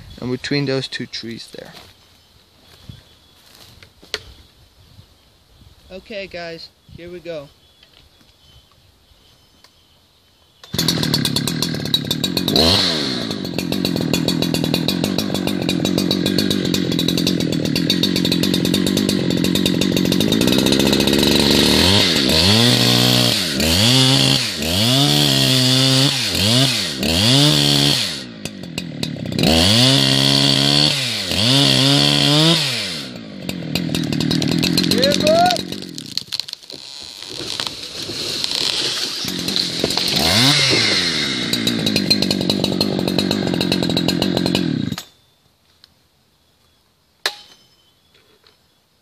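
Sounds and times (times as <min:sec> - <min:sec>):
chainsaw revving: 0:10.6 - 0:45.0.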